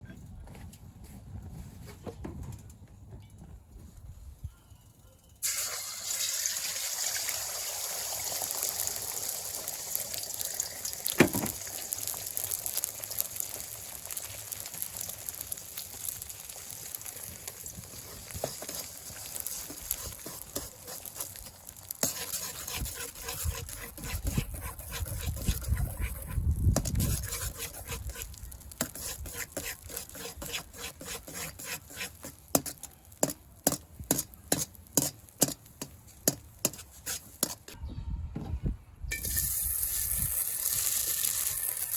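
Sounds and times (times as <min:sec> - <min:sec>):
food sizzling in a wok: 0:05.4 - 0:37.6, 0:39.1 - 0:41.9
spatula scraping metal wok: 0:17.9 - 0:37.8.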